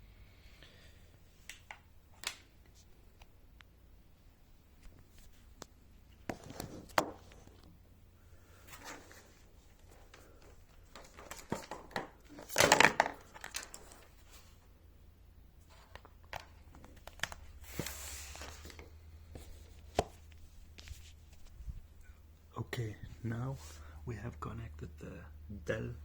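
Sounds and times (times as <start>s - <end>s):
rustling: 15.6s - 22.1s.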